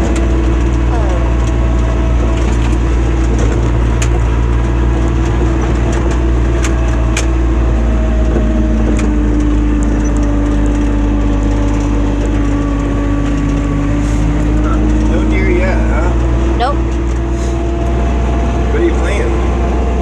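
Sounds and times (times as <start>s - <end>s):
atv engine running: 0.0s - 20.0s.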